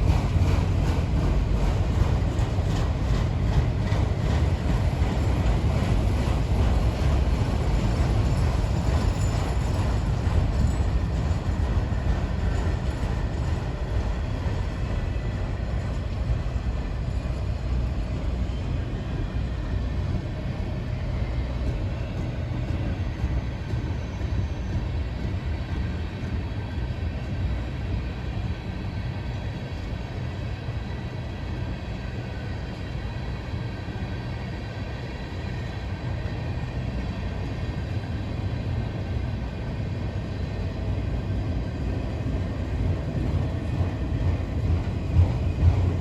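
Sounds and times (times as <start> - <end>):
train rumbling past: 0.0 - 46.0.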